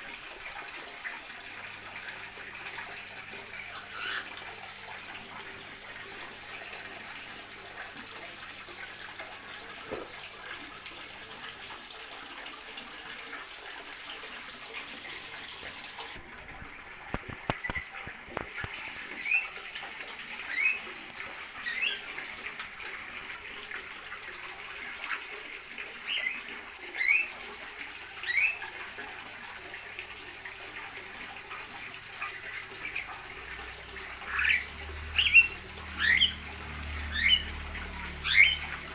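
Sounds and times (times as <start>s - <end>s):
small birds chirping: 34.3s - 36.4s, 38.2s - 38.8s.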